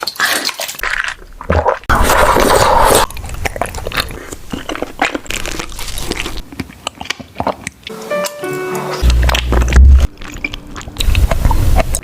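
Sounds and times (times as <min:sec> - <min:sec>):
slurp through a straw: 0:00.0 - 0:06.4
chewing tapioca pearls: 0:00.0 - 0:07.9, 0:09.0 - 0:12.0.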